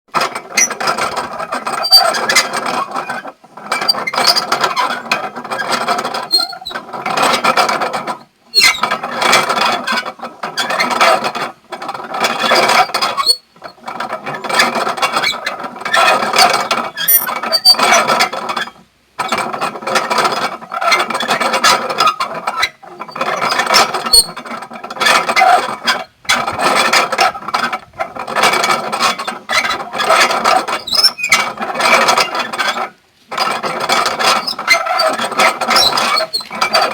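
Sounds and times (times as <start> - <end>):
mill gears grinding and squealing: 0.6 - 6.8, 8.5 - 9.9, 12.3 - 13.4, 14.3 - 18.0, 20.7 - 24.4, 28.4 - 32.8, 33.4 - 36.9.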